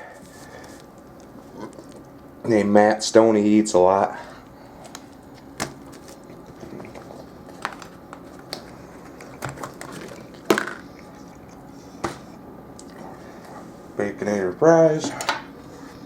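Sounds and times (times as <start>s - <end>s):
person chewing food: 0.2s - 2.4s, 4.4s - 14.0s.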